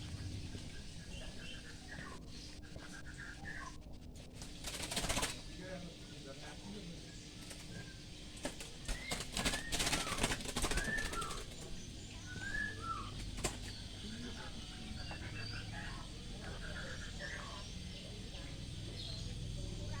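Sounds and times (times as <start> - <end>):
birds fluttering wings: 0.0 - 14.6
birds chirping: 0.0 - 20.0.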